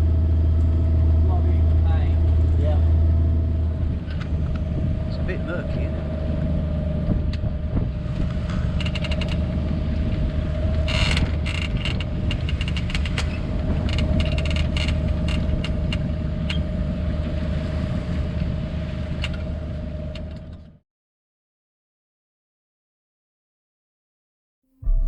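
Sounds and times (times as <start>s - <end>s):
boat engine running: 0.0s - 20.8s
sharp clicks and creaks: 8.4s - 9.5s, 10.9s - 16.6s.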